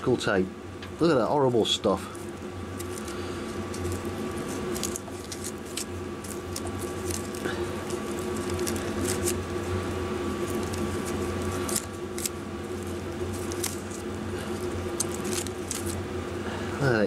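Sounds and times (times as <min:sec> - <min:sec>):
steady background hum: 0:00.0 - 0:17.0
sticky tape tearing crackles: 0:02.7 - 0:16.0.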